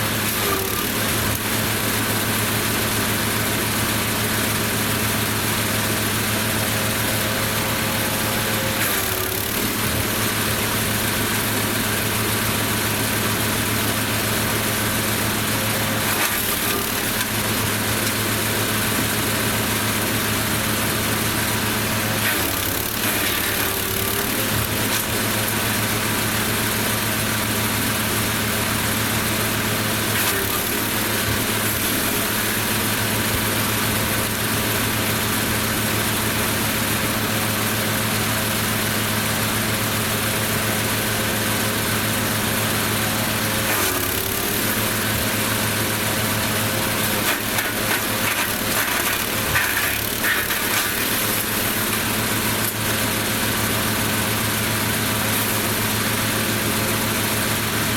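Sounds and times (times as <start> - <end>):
wood chipper running: 0.0 - 57.9
branches passing through cutter: 16.0 - 18.2, 22.2 - 25.6, 30.1 - 32.7, 43.6 - 53.2.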